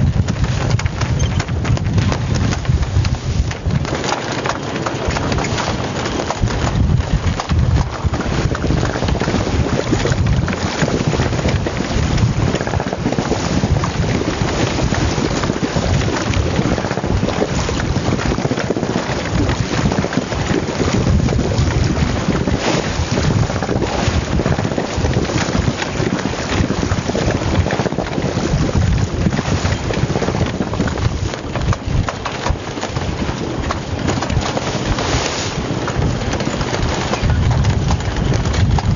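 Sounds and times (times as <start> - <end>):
wind buffeting microphone: 0.0 - 38.9.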